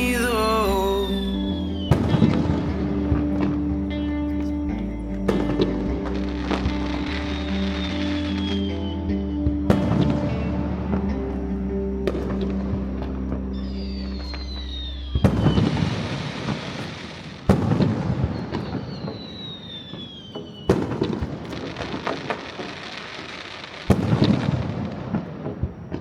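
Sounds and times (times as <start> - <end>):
fireworks bursting with crackling: 0.0 - 26.0
falling firework whistle: 0.4 - 3.5, 5.3 - 10.6, 12.0 - 26.0.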